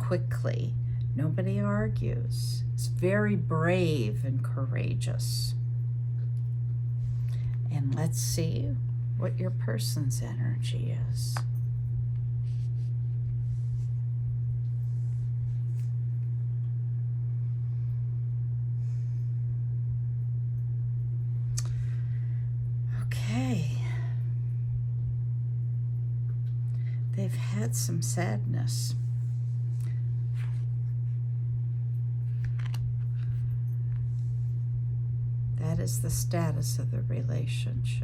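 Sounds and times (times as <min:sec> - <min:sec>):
steady low hum: 0:00.0 - 0:38.0
cards rustling: 0:32.3 - 0:33.4.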